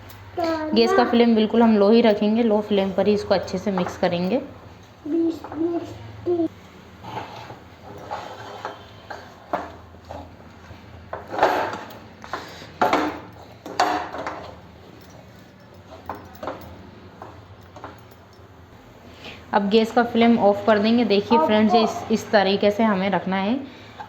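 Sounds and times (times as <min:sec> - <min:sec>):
spatula scraping a pan: 0:07.0 - 0:10.4.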